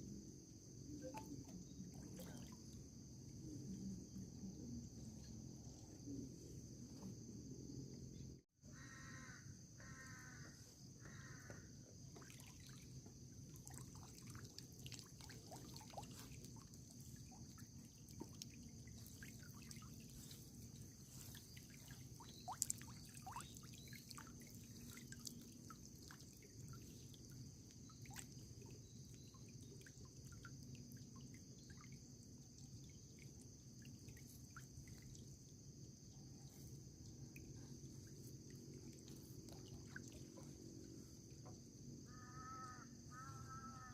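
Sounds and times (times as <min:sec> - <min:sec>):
high-pitched insect chorus: 0:00.0 - 0:43.9
water dripping and trickling: 0:12.2 - 0:36.1, 0:36.8 - 0:41.4.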